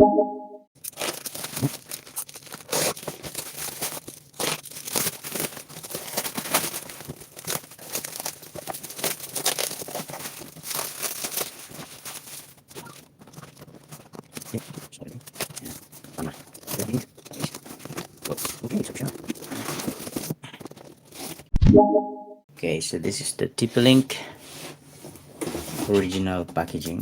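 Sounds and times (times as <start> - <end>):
package wrapping crinkling and ripping: 0.8 - 21.4.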